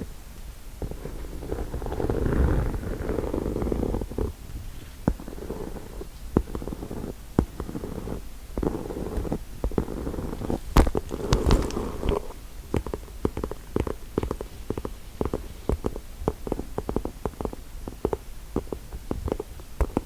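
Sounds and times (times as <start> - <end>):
low scratching noise: 0.0 - 20.0
sharp tapping on objects: 8.6 - 20.0.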